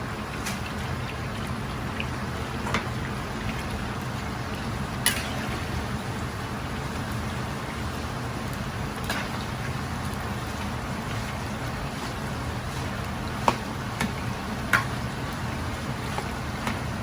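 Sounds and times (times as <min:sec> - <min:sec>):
kitchen hiss and hum: 0:00.0 - 0:17.0.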